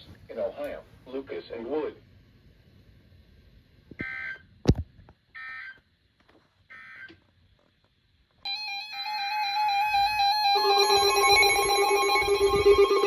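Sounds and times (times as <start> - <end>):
steady multi-tone electronic sound: 8.5 - 13.0.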